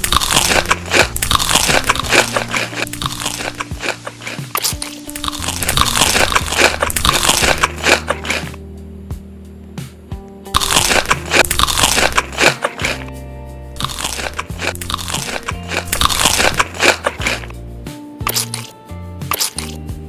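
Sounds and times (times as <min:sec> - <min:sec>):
person chewing crisp food: 0:00.0 - 0:08.6, 0:10.6 - 0:13.1, 0:13.8 - 0:17.5, 0:18.3 - 0:18.7, 0:19.3 - 0:19.8.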